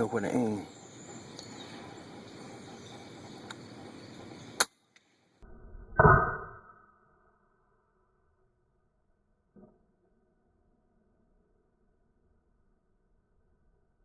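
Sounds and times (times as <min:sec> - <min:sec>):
sharp click: 0:04.6 - 0:05.1.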